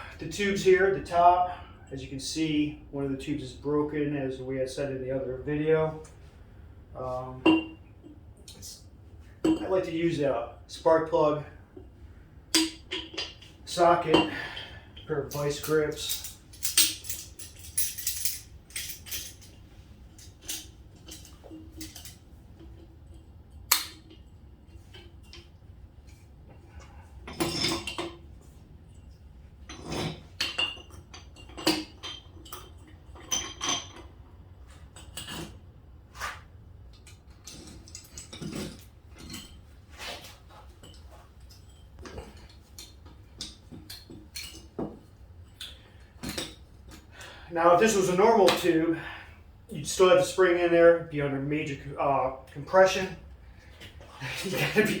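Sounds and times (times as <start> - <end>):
metal tools clinking and scraping: 12.6 - 23.3, 26.1 - 28.2, 28.9 - 35.6, 37.0 - 48.8, 53.8 - 55.0.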